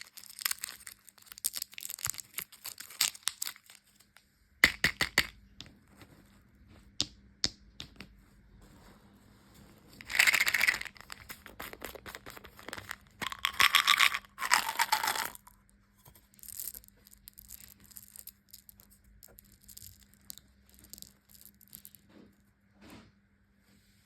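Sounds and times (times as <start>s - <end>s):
plastic wrappers crinkling: 0.0s - 4.1s, 10.0s - 15.4s.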